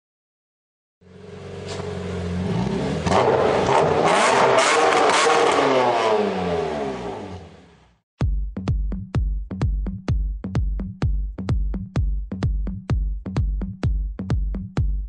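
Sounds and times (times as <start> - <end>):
car engine accelerating hard: 1.0 - 7.9
electronic music with steady beat: 8.2 - 15.0.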